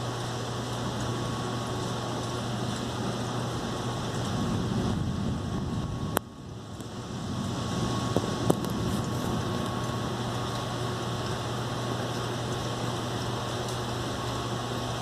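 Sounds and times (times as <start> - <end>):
low hum: 0.0 - 15.0
thunderstorm rushing noise: 0.9 - 12.7.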